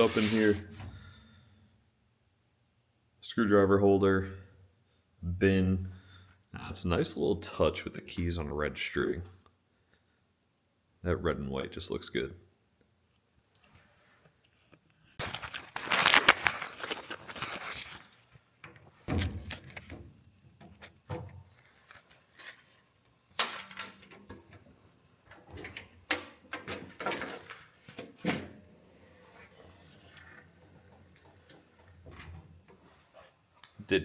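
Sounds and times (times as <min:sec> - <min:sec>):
steel drawers sliding: 0:00.0 - 0:00.9
drawers closing with clunks: 0:23.4 - 0:33.1.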